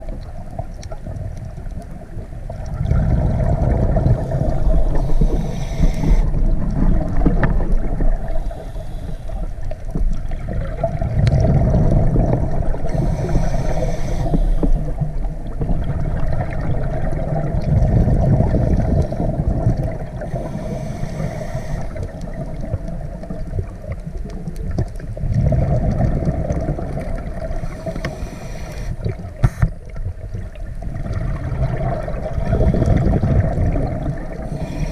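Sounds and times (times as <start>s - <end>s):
exhaled bubbles rumbling: 0.0s - 34.9s
regulator inhale hiss: 4.2s - 6.6s, 8.1s - 9.8s, 12.7s - 15.0s, 18.6s - 19.5s, 20.2s - 22.3s, 27.4s - 29.8s, 34.4s - 34.9s.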